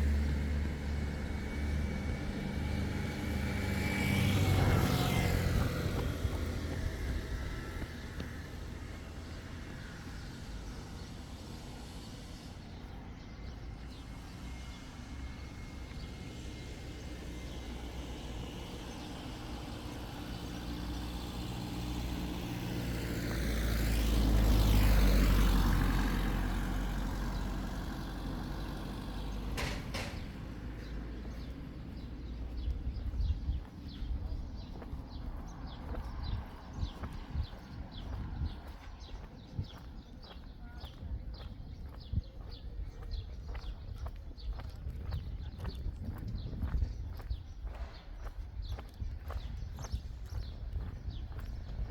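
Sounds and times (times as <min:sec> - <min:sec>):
motor vehicle passing by: 0:00.0 - 0:51.9.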